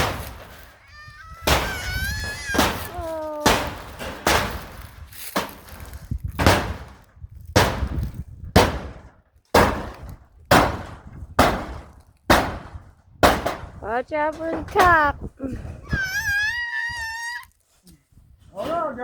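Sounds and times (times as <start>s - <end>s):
heavy strikes on wood framing: 0.0s - 15.2s.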